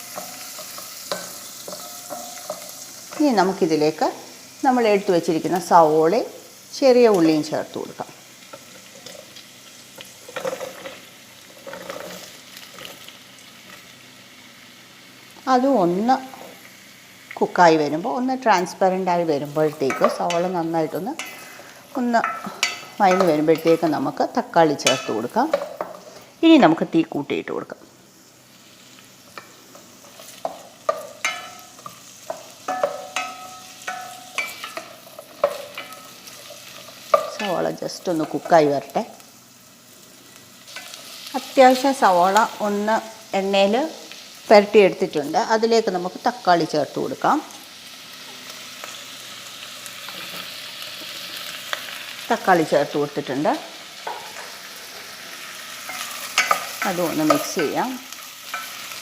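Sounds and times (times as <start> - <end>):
stirring in a pan: 0.0 - 3.7, 19.6 - 24.0, 29.1 - 38.7, 53.9 - 59.0
onions sizzling in a pan: 0.0 - 59.0.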